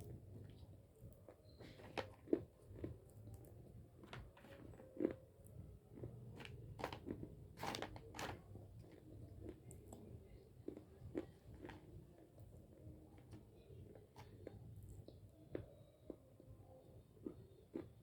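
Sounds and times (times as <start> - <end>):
person chewing crunchy clay: 1.3 - 5.2, 5.9 - 12.6.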